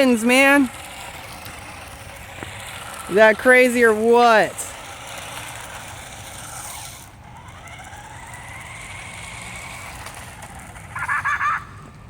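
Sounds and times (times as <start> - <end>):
toy car motors whining: 0.0 - 12.0.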